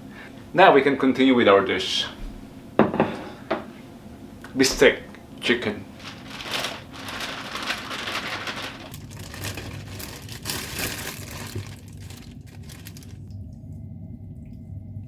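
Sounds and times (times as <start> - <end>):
plastic bag crinkling: 5.4 - 13.4.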